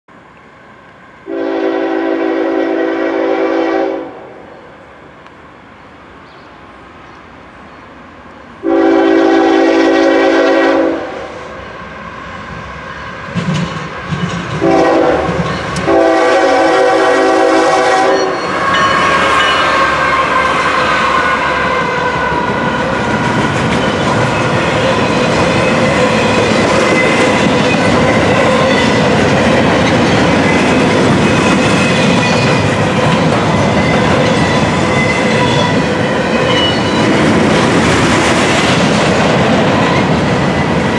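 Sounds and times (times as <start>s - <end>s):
diesel locomotive engine rumbling: 0.1s - 40.9s
locomotive air horn: 1.3s - 4.3s, 8.6s - 11.5s, 14.6s - 22.5s
train cars rolling: 4.8s - 40.9s
wheel clickety-clack: 13.3s - 14.6s, 23.0s - 40.9s
metallic wheel squeal: 33.7s - 37.1s.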